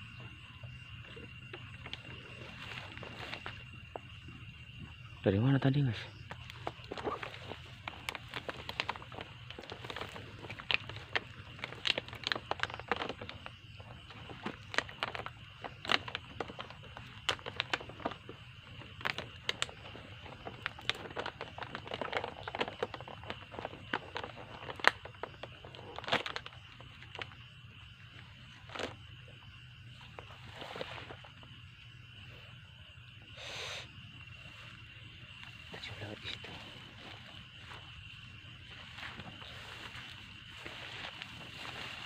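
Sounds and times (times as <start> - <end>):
footsteps crunching through undergrowth: 2.0 - 4.2, 34.4 - 42.0.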